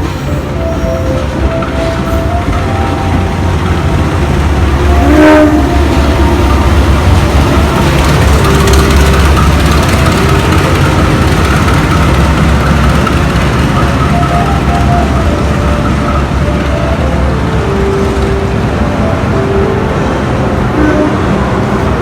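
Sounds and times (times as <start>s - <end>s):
train horn: 0.0s - 9.3s, 19.2s - 22.0s
diesel train engine rumble: 0.0s - 22.0s.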